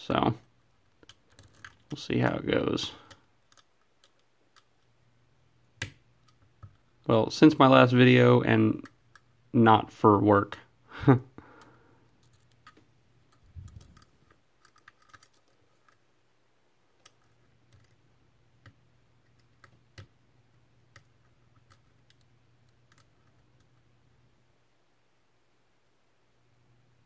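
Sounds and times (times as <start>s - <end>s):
low steady hum: 0.0s - 27.0s
lock picking tools clicking: 12.2s - 16.0s.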